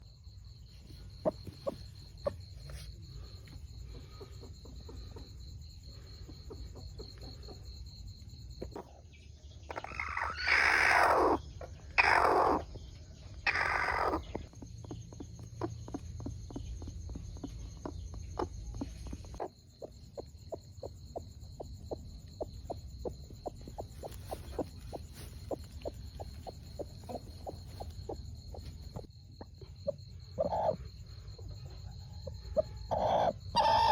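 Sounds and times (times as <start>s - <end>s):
chickens clucking: 0.8s - 9.0s, 9.7s - 33.9s
loud harsh chicken calls: 12.0s - 12.6s, 13.5s - 14.2s.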